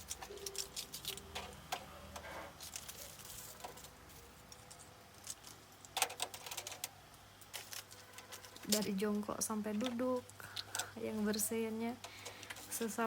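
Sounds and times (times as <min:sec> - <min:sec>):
household items clicking and clattering: 0:00.0 - 0:09.1.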